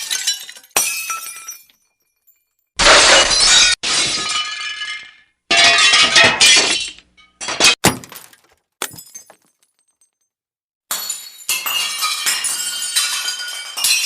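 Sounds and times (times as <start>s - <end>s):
glass breaking: 0.0s - 10.1s, 10.9s - 14.0s.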